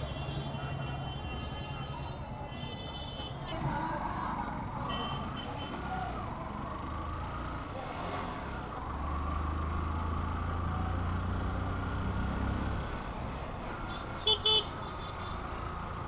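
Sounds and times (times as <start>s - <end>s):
vehicle horn honking: 13.9s - 15.4s.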